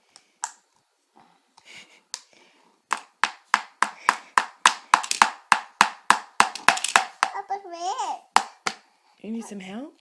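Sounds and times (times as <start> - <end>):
rapid sharp knocks or slaps: 2.9 - 7.4, 8.4 - 8.8.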